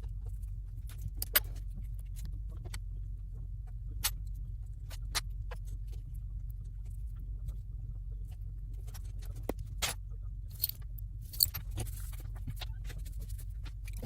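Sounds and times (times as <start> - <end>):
steady low hum: 0.0 - 14.0
tools and phone parts clicking: 10.5 - 11.8.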